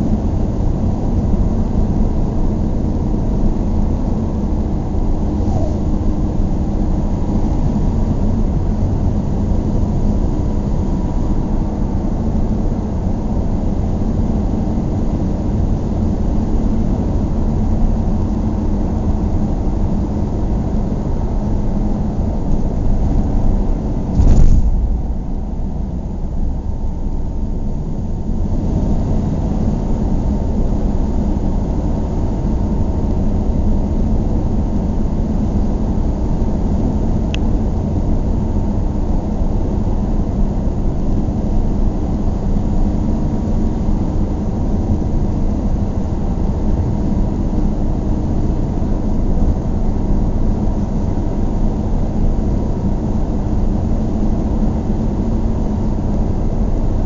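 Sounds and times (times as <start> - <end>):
car road and engine rumble: 0.0 - 57.0
loud thump: 24.1 - 26.5.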